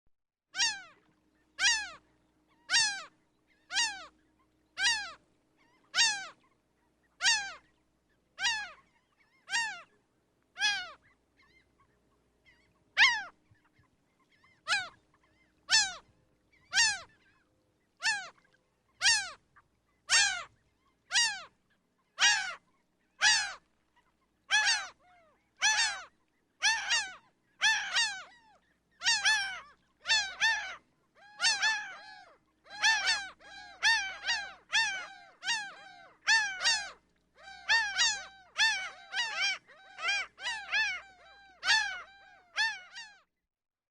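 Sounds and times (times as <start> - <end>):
gull laughing calls: 31.4 - 36.9, 37.5 - 43.0.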